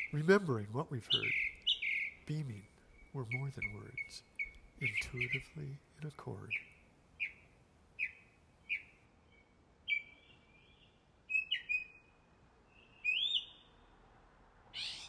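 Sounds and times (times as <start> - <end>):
bird chirps dropping in pitch: 1.1 - 5.6, 13.0 - 13.7
bird whistles sweeping upward: 12.9 - 13.7.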